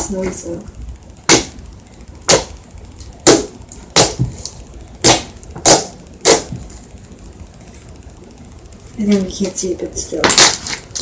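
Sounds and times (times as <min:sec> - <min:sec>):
slime squelching and popping: 0:02.2 - 0:06.7.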